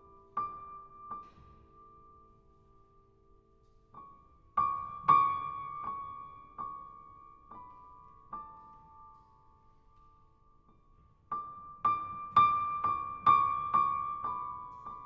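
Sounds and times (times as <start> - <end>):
solo jazz piano: 0.0 - 15.0.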